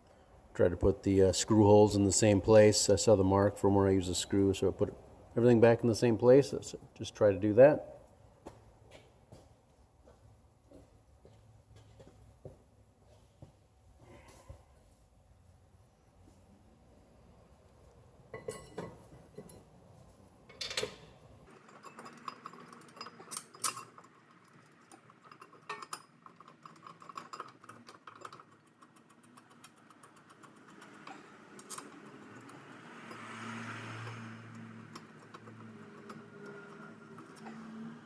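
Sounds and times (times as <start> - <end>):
metal brake parts and tools clinking: 18.3 - 19.7, 20.5 - 38.0.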